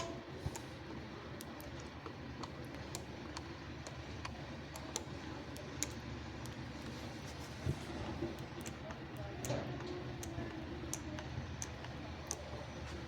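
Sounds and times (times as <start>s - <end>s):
light clicks and taps: 0.0s - 13.0s
low background hum: 0.0s - 13.0s.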